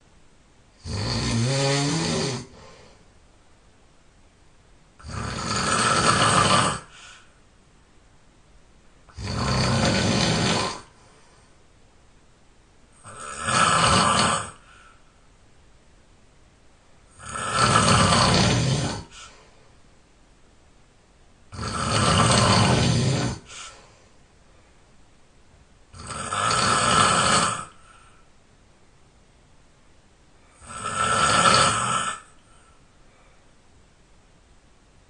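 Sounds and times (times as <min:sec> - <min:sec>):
person snoring loudly: 0:00.8 - 0:02.9, 0:05.0 - 0:07.3, 0:09.1 - 0:11.0, 0:13.0 - 0:15.0, 0:17.1 - 0:19.4, 0:21.5 - 0:23.8, 0:25.9 - 0:28.0, 0:30.5 - 0:32.4
quiet breathing: 0:01.7 - 0:03.4, 0:05.0 - 0:07.6, 0:09.0 - 0:11.9, 0:14.4 - 0:15.4, 0:17.1 - 0:20.0, 0:21.5 - 0:25.0, 0:27.6 - 0:28.5, 0:31.8 - 0:33.8.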